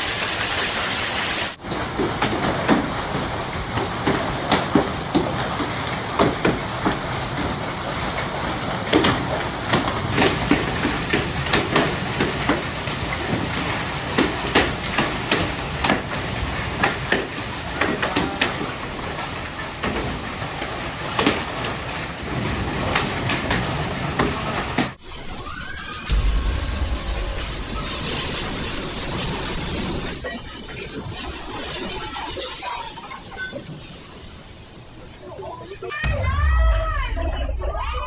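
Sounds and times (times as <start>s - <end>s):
storm hiss: 0.0s - 25.0s, 26.1s - 31.5s
hailstones knocking on hard surfaces: 1.6s - 25.0s.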